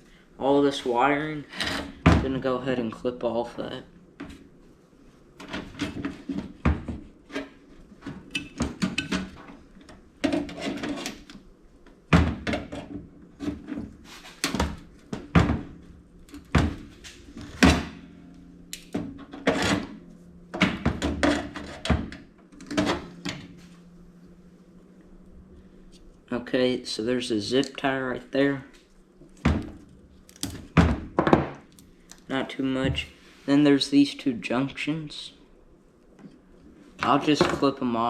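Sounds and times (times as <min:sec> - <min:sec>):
wire cutters snipping wiring: 0:18.7 - 0:19.9, 0:30.2 - 0:30.8.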